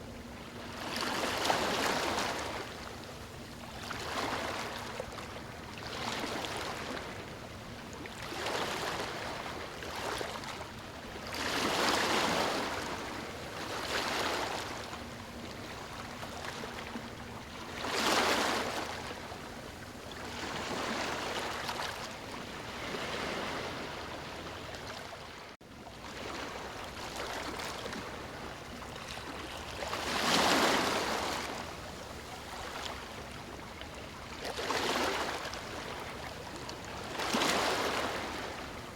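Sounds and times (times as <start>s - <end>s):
ocean waves breaking on beach: 8.2s - 17.0s, 20.2s - 38.9s.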